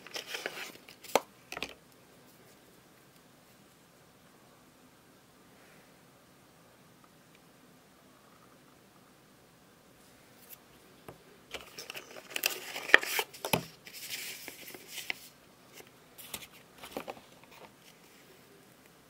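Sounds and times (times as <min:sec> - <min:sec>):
packaging rustling and crinkling: 0:00.0 - 0:01.8, 0:11.5 - 0:18.1.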